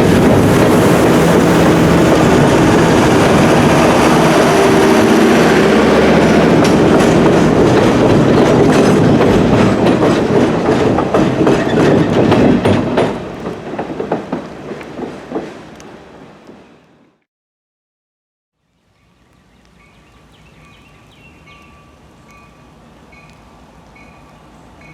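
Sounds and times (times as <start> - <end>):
train wheels clicking on rail joints: 0.0 - 16.7
train rumble: 0.0 - 17.2.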